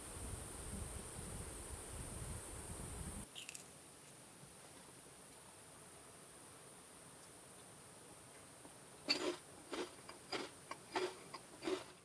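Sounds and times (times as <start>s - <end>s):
low wind rumble: 0.0s - 3.3s.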